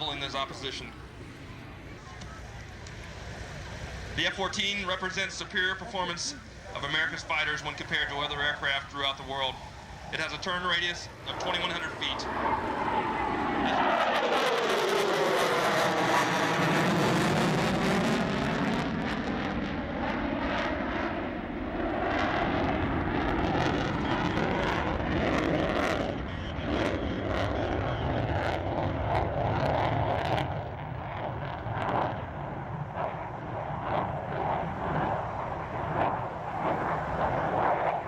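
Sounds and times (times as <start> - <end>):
jet engines roaring past: 0.0 - 38.0.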